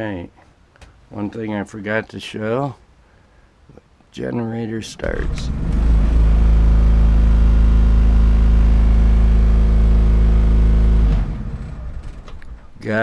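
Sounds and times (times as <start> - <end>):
generator engine hum: 4.9 - 13.0.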